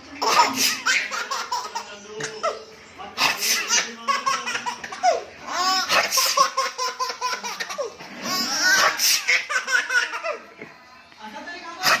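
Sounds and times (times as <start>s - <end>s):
baby laughing: 0.2s - 2.6s, 3.2s - 10.5s.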